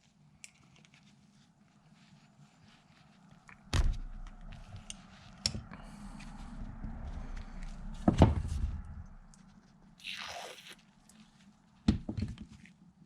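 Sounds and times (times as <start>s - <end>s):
small clicks of handling parts: 0.4s - 1.0s.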